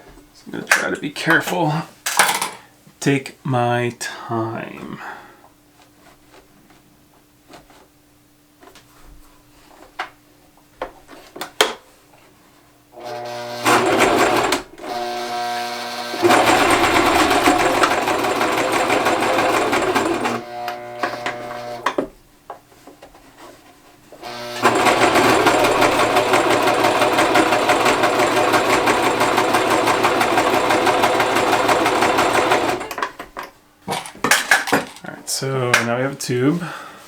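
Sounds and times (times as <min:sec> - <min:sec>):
sewing machine stitching denim: 0:13.0 - 0:21.9, 0:24.2 - 0:33.1.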